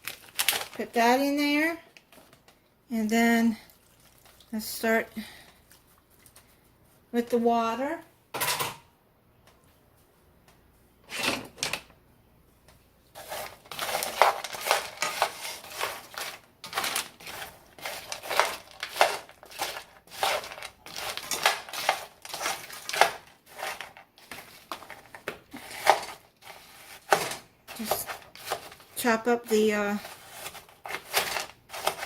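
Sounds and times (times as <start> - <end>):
utensil scraping a skillet: 13.1 - 32.0.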